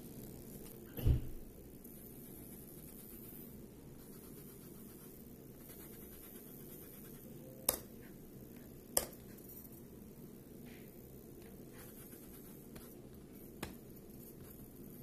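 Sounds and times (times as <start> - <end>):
laptop high hiss: 0.0 - 15.0.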